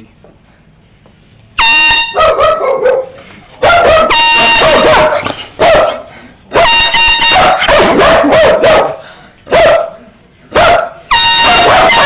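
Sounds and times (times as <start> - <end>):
air horn blasts: 1.6 - 2.3, 3.9 - 5.2, 6.5 - 7.9, 11.1 - 12.0.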